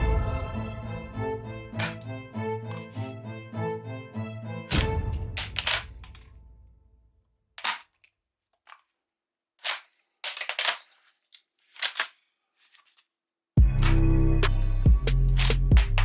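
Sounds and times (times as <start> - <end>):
toy gun mechanism clacking: 1.8 - 2.0, 5.4 - 6.3, 7.6 - 8.9, 9.6 - 12.2.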